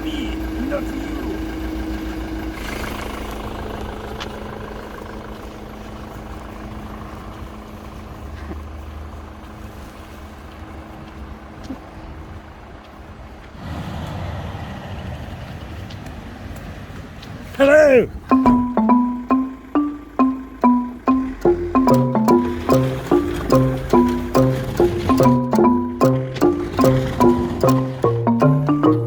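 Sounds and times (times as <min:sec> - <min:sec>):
truck engine running: 0:18.3 - 0:29.0.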